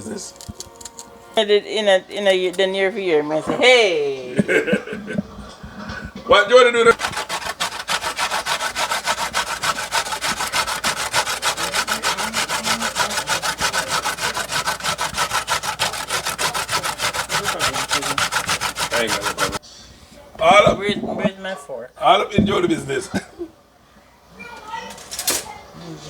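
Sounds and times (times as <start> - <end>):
vegetables being grated: 6.9 - 19.6.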